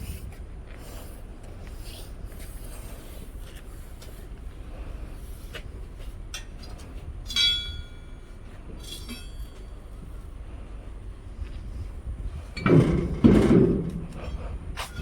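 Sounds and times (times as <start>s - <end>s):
steady low rumble: 0.0s - 15.0s
ringing metallic clang: 7.3s - 8.2s, 8.8s - 9.9s.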